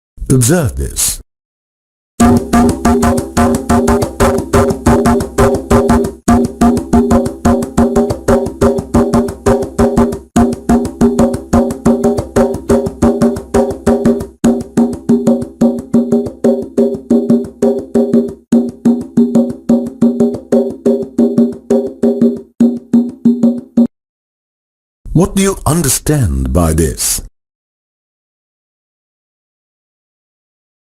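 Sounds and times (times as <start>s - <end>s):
wood block struck rapidly: 2.2s - 23.8s.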